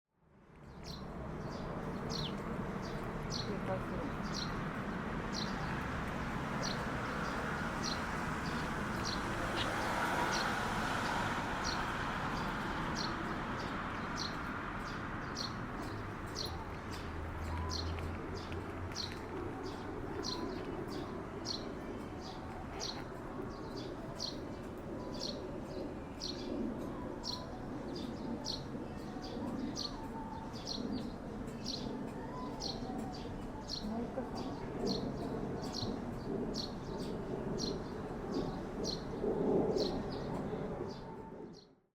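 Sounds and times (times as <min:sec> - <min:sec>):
sparrow chirping: 0:00.8 - 0:26.6.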